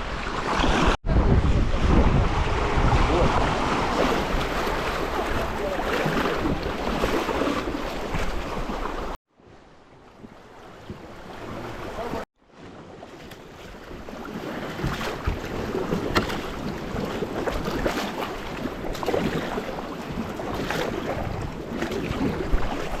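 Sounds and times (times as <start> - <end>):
wind on microphone: 0.0 - 9.2, 13.8 - 23.0.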